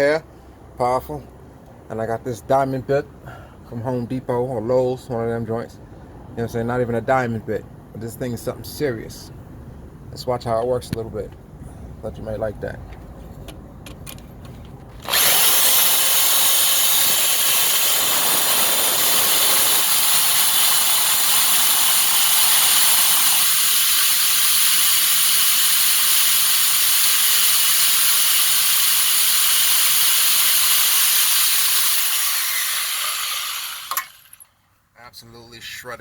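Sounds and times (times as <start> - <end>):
power drill boring into metal: 15.0 - 34.5.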